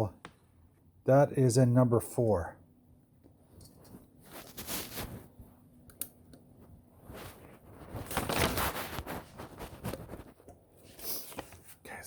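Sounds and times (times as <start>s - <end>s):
wires and connector clicking rustling: 5.8s - 10.6s.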